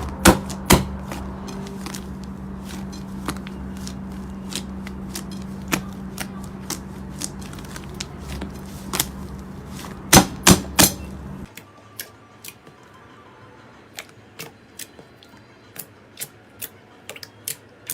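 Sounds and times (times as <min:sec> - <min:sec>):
steady low hum: 0:00.0 - 0:11.5.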